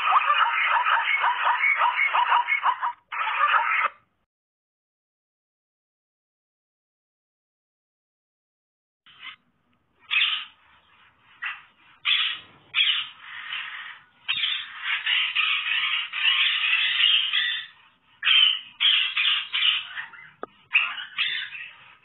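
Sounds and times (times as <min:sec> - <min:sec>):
animal calling: 0:00.0 - 0:04.1, 0:11.4 - 0:22.0.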